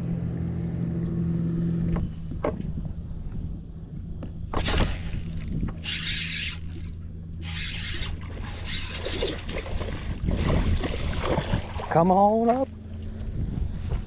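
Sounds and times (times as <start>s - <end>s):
boat motor humming: 4.4s - 14.0s.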